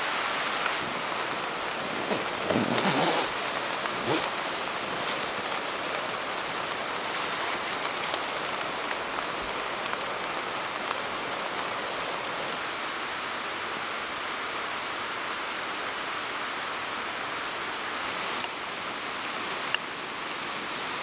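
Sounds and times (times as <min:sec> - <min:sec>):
rain falling: 0:00.0 - 0:21.0
raindrops tapping: 0:00.6 - 0:12.6.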